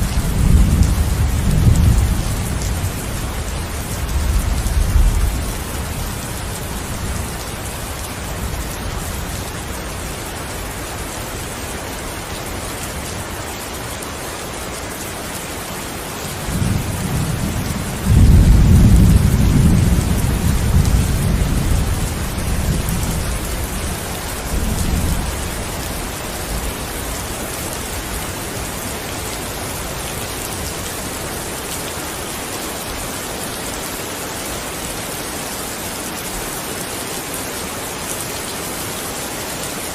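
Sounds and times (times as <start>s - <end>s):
steady rain falling: 0.0s - 39.9s
low thunder rumble: 16.5s - 25.4s.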